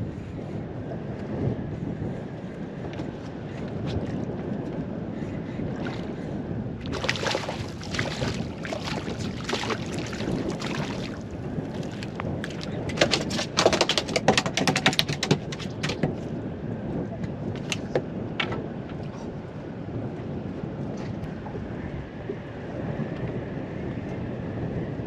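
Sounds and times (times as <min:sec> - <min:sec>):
wind buffeting microphone: 0:00.0 - 0:25.0
water lapping against boat hull: 0:02.8 - 0:19.6
water slaps and splashes: 0:05.8 - 0:06.1, 0:06.8 - 0:16.3.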